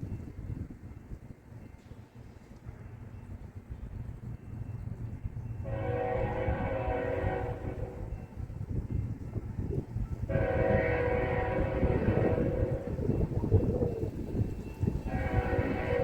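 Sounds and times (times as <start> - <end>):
train horn blasts: 5.6 - 8.4, 10.2 - 13.7, 14.9 - 16.0.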